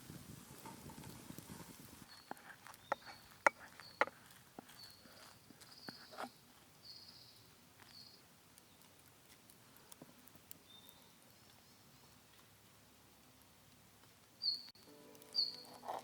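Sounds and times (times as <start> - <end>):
high bird calls: 2.1 - 4.1, 14.4 - 15.8.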